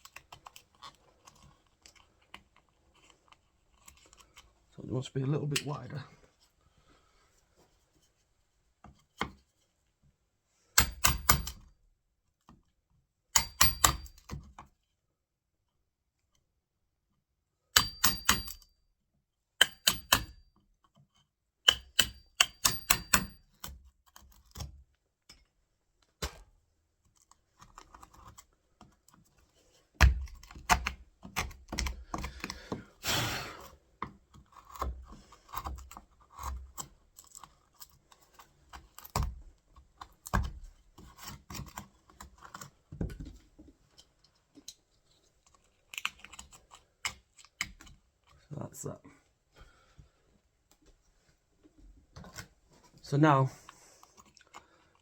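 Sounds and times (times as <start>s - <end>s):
hammer tapping chisel: 13.4s - 14.4s, 17.7s - 18.6s, 19.6s - 20.4s
chisel scraping wood: 31.2s - 39.2s.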